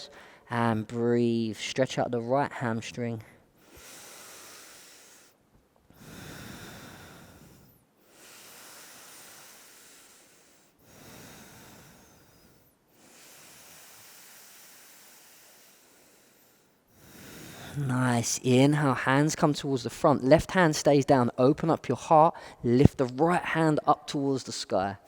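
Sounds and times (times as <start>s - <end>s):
man breathing slowly: 0.0s - 0.5s, 3.4s - 17.8s, 22.4s - 22.6s.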